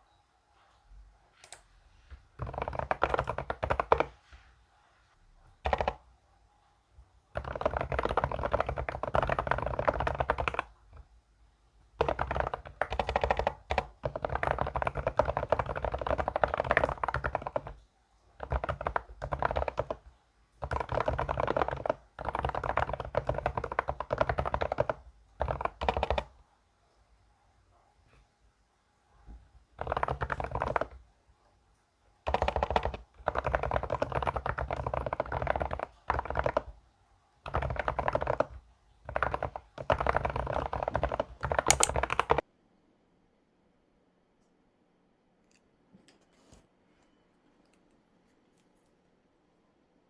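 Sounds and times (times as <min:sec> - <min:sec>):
fast typing on keyboard: 0:01.4 - 0:04.2, 0:05.6 - 0:06.0, 0:07.3 - 0:11.1, 0:12.0 - 0:17.8, 0:18.4 - 0:26.4, 0:29.7 - 0:31.0, 0:32.2 - 0:36.8, 0:37.4 - 0:42.4.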